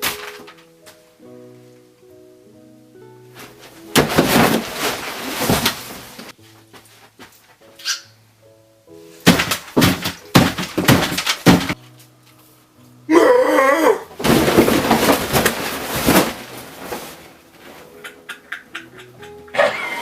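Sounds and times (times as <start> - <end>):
soft background music: 0.0 - 20.0
dense noise: 3.4 - 6.3
loud sharp knocks: 9.3 - 11.8.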